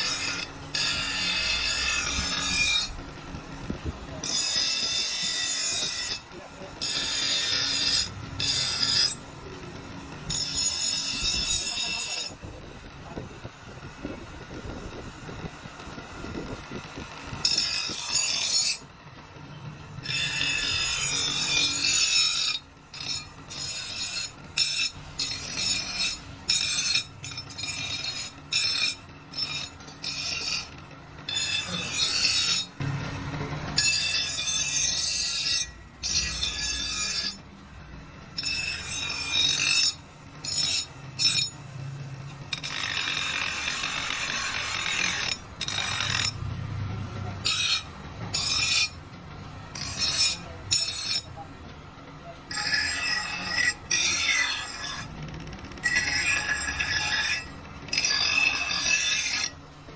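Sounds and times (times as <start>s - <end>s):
file rasping on steel blade: 0.0s - 3.0s, 4.2s - 9.3s, 10.3s - 12.4s, 17.4s - 18.8s, 20.0s - 33.0s, 33.7s - 37.4s, 38.4s - 41.6s, 42.5s - 46.4s, 47.4s - 49.0s, 49.7s - 51.4s, 52.5s - 55.2s, 55.8s - 59.6s.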